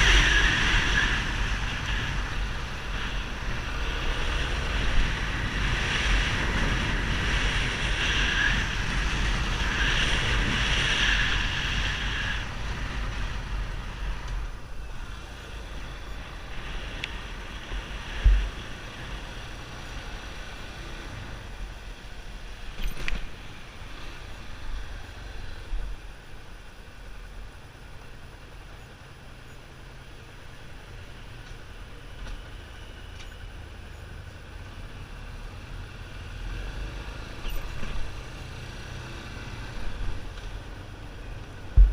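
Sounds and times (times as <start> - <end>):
wind on microphone: 0.0 - 19.6, 39.4 - 41.9.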